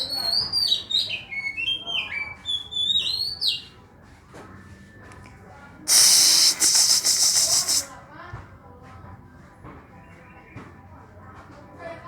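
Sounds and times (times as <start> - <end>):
bird singing whistled notes: 0.0 - 3.7
loud steady hiss: 5.9 - 7.9.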